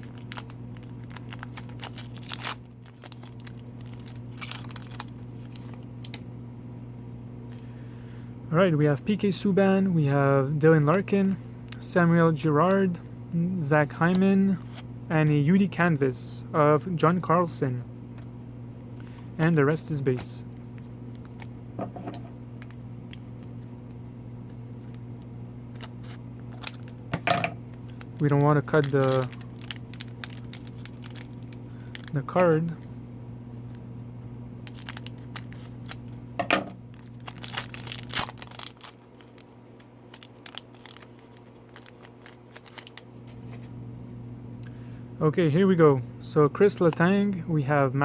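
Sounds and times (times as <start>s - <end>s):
card packs rustling: 0.0s - 6.2s, 19.0s - 21.6s, 25.7s - 32.8s, 33.7s - 36.3s, 36.9s - 43.7s
wrapper crinkling: 0.0s - 6.2s, 25.7s - 27.1s, 27.7s - 32.4s, 34.6s - 36.2s, 36.9s - 43.7s
wrapper ripping: 0.0s - 6.2s, 25.7s - 27.0s, 27.7s - 32.2s, 34.6s - 36.2s, 36.9s - 43.7s
steady low hum: 0.0s - 48.0s.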